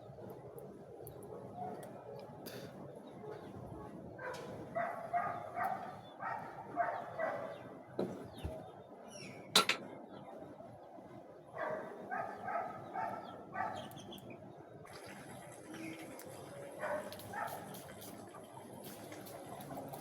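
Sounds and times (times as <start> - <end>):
dog barking: 4.2 - 7.7, 11.6 - 13.9, 16.8 - 17.8.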